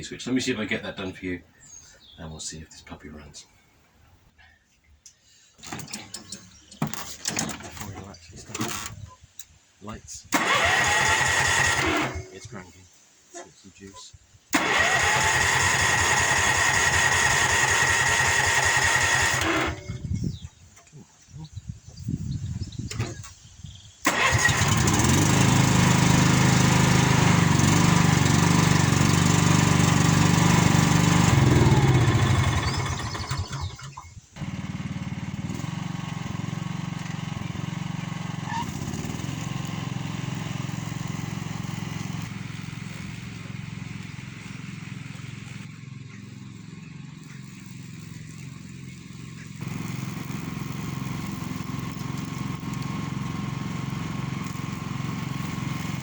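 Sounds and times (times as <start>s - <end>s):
ride-on mower engine running: 5.6s - 9.0s, 10.4s - 12.4s, 14.6s - 20.3s, 24.0s - 56.0s.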